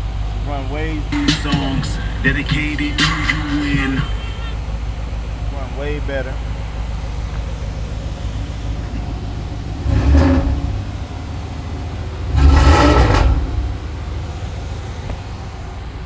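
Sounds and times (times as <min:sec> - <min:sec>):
car engine idling: 0:00.0 - 0:16.0
engine revving: 0:00.0 - 0:16.0.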